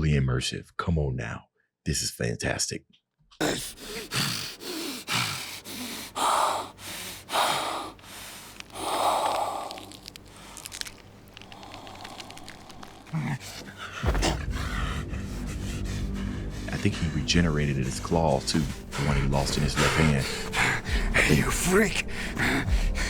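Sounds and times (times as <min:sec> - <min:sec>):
ragged rasping panting: 0:03.4 - 0:23.0
music: 0:13.4 - 0:23.0.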